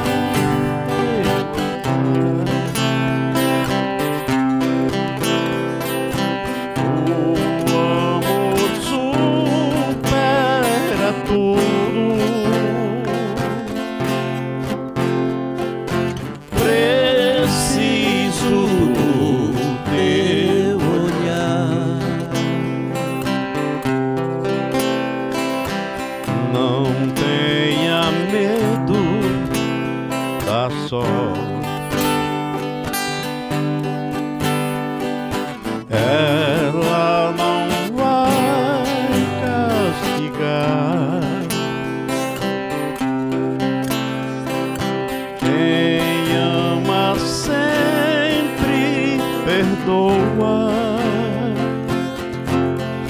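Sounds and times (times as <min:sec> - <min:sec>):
vibrato melody line: 0:00.0 - 0:15.2
acoustic guitar strumming: 0:00.0 - 0:53.0.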